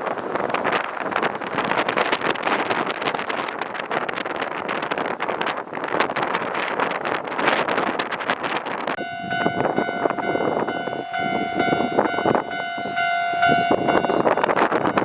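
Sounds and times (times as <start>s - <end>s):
wind noise on microphone: 0.0s - 15.0s
train horn: 9.0s - 15.0s.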